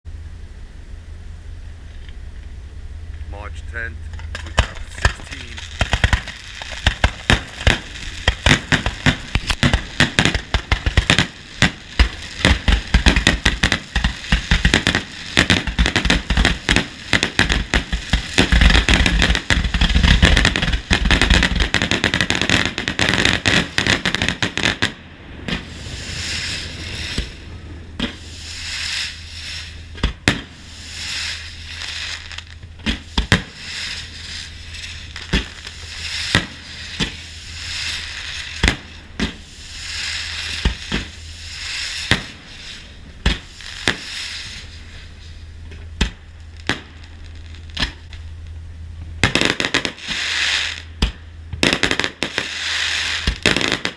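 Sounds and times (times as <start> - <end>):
fireworks bangs and crackling: 3.3 - 48.3, 49.0 - 53.9
firework booms: 4.1 - 45.1, 49.2 - 53.9.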